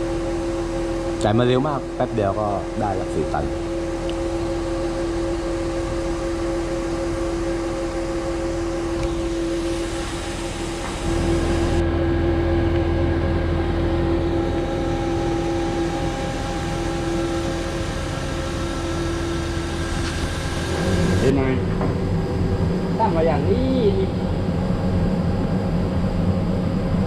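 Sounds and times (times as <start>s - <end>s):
truck mechanical hum: 13.8s - 25.2s.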